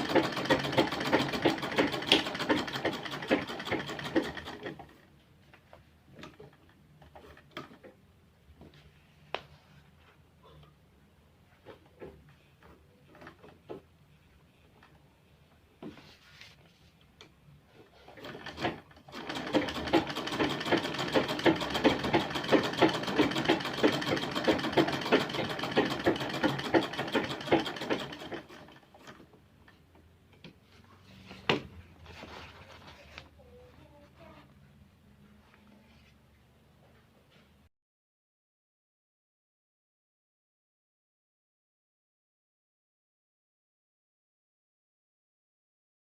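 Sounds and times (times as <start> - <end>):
sewing machine stitching: 0.0 - 5.0, 17.9 - 29.2.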